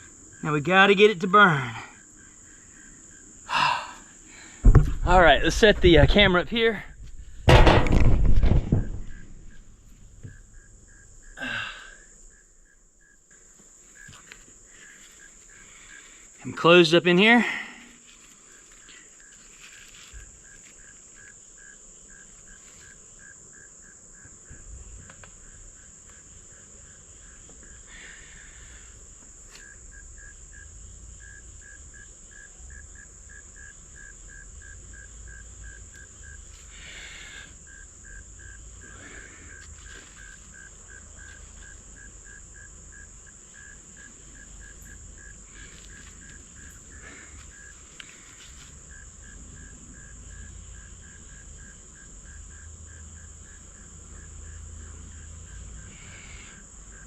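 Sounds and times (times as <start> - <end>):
cricket chirping: 0.0 - 57.0
low rumble: 4.6 - 10.9.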